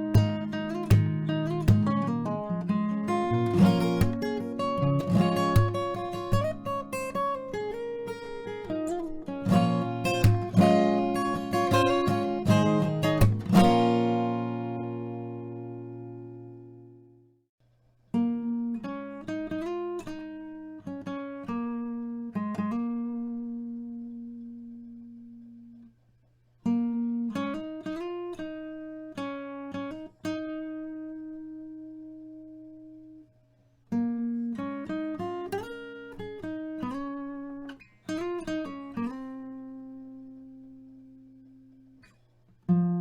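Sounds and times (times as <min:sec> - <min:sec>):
acoustic guitar picking: 0:00.0 - 0:17.2, 0:26.6 - 0:33.3, 0:33.9 - 0:43.0.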